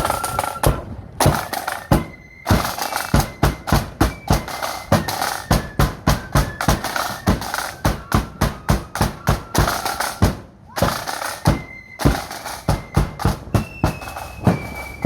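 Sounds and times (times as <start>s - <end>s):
bass drum and snare beats: 0.0s - 15.0s
shrill flutes playing a tune: 0.0s - 15.0s.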